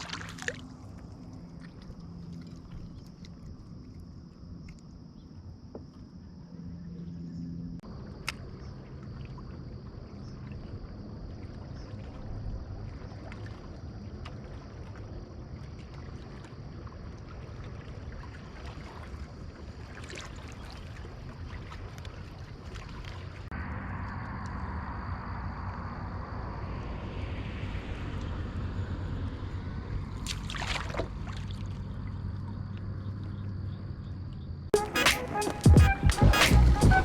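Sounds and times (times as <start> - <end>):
water slapping against hull: 0.0 - 4.0, 7.9 - 23.5, 30.0 - 33.4
wind rumbling on microphone: 21.0 - 34.2.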